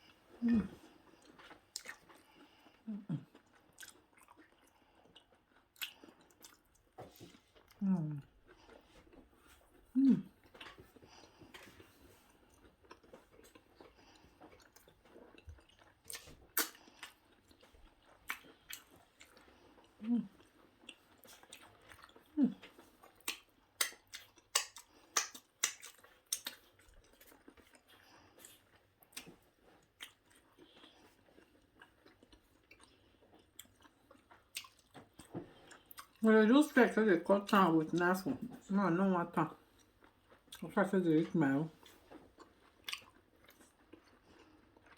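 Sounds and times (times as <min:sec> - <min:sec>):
person chewing food: 0:00.0 - 0:36.2, 0:39.6 - 0:44.9.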